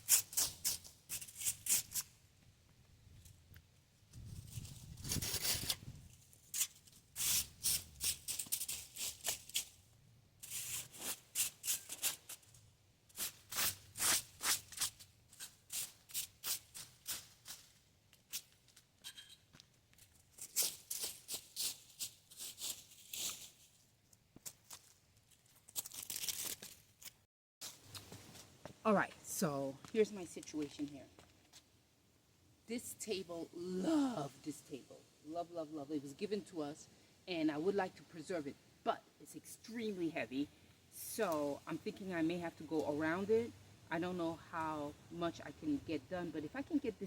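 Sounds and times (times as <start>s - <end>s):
rake scraping through dry leaves: 4.4s - 9.7s, 10.4s - 12.4s, 20.4s - 23.8s.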